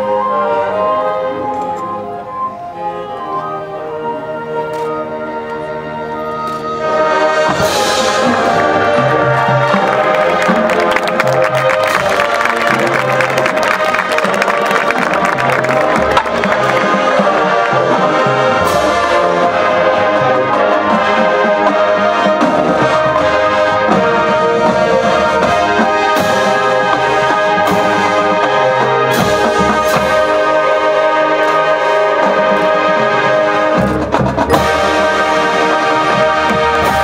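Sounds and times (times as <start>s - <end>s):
brass sustained chords: 0.0s - 37.0s
percussion hits: 7.5s - 37.0s.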